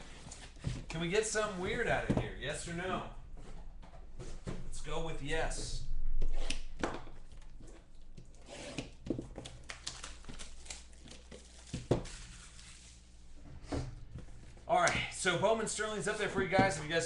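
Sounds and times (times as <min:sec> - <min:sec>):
plastic wrapping crinkling: 0:07.2 - 0:13.2
packaging being torn open: 0:08.8 - 0:12.8.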